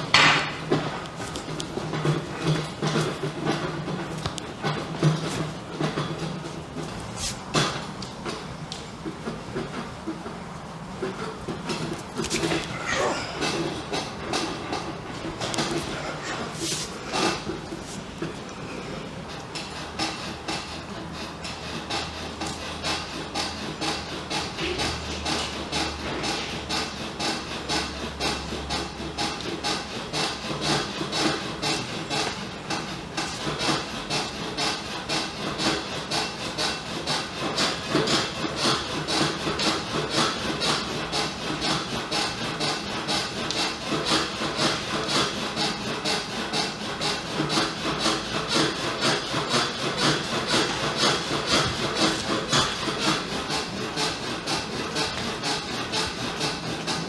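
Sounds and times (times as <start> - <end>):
hands rubbing skin: 6.9 - 7.5, 11.8 - 12.8, 15.3 - 18.0.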